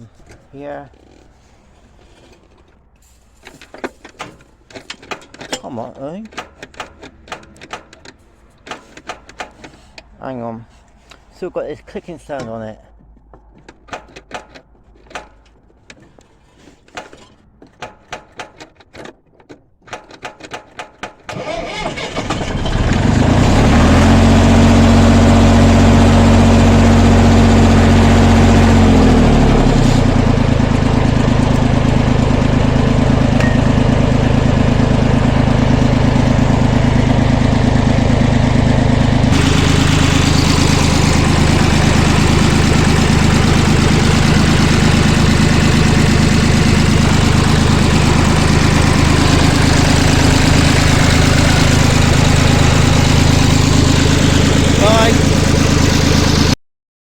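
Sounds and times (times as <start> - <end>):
tractor engine idling: 21.3 - 56.6.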